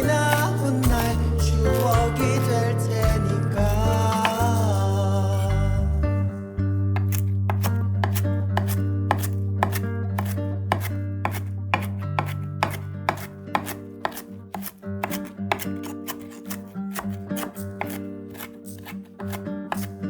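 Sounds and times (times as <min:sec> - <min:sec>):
knife chopping on cutting board: 0:00.0 - 0:01.2, 0:07.0 - 0:20.0
low music chord: 0:00.0 - 0:06.4.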